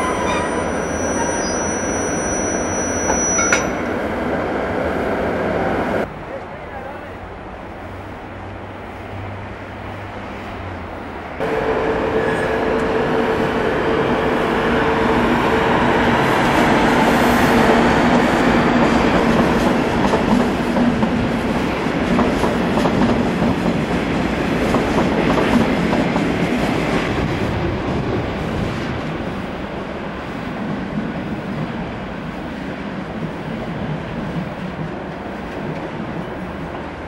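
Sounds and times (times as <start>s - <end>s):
train rumbling: 0.0s - 37.0s.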